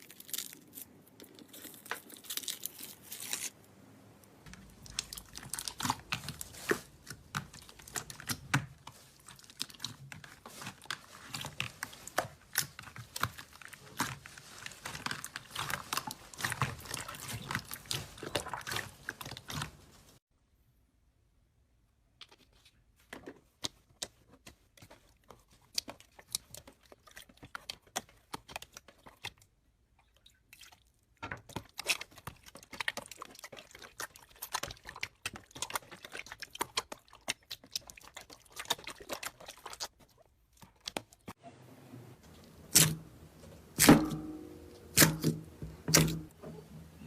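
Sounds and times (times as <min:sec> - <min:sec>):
slime crackling and popping: 0:04.5 - 0:19.7.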